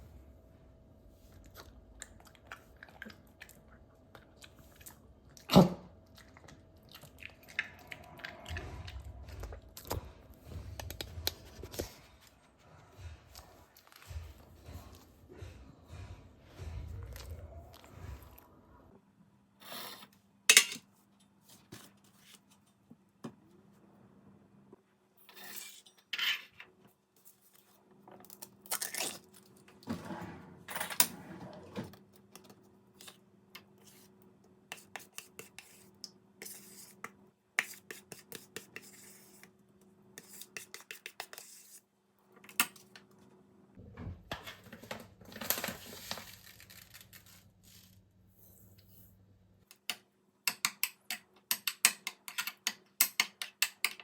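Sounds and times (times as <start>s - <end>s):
kitchenware clinking and scraping: 20.5s - 20.9s, 25.2s - 26.7s, 28.7s - 31.9s.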